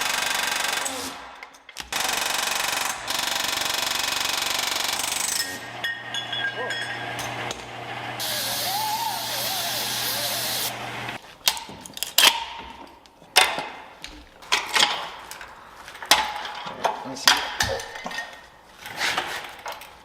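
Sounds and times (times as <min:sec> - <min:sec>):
compressed air spraying hiss: 0:08.2 - 0:10.8.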